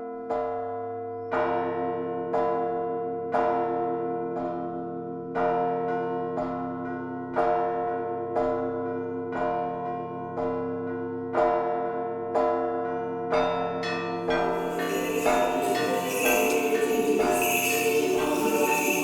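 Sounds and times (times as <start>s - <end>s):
church bells struck: 13.8s - 19.0s
large bells humming: 14.3s - 19.0s.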